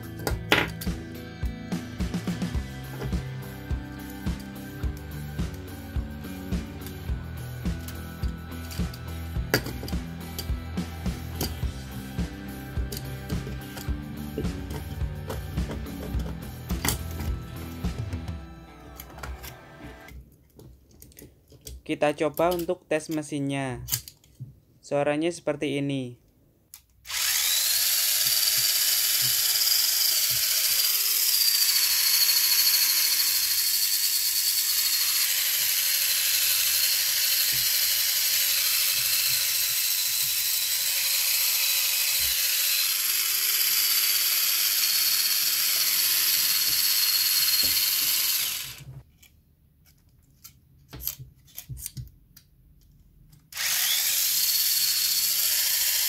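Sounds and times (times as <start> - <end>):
small electric motor whining: 27.1 - 49.0, 53.5 - 56.0.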